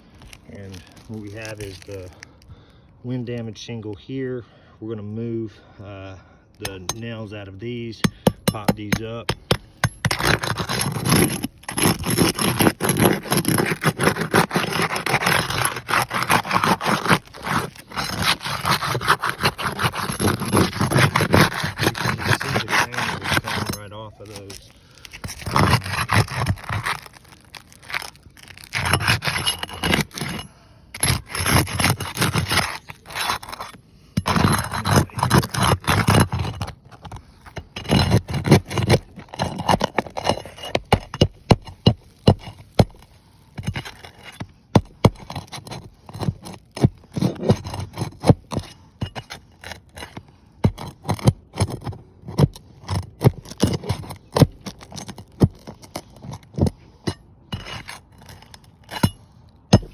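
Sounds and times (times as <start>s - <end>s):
tool scraping under shingles: 0.0s - 4.3s, 6.5s - 59.9s.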